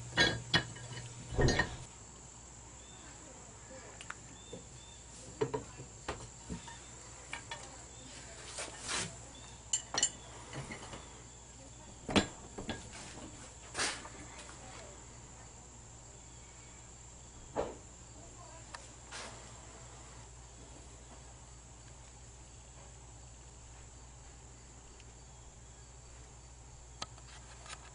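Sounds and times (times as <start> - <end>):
pipe wrench metal clicks and knocks: 0.1 - 1.9.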